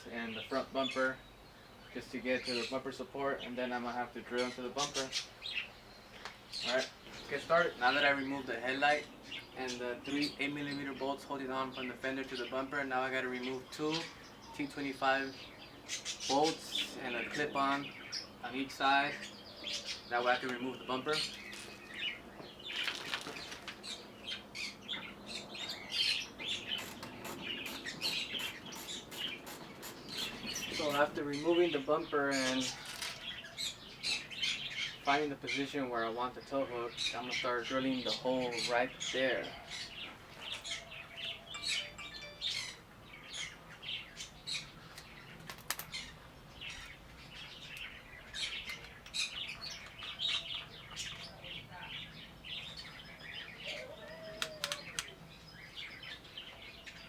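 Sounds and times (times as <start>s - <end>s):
small birds chirping: 0.0s - 57.0s
faint clicks: 54.4s - 55.1s.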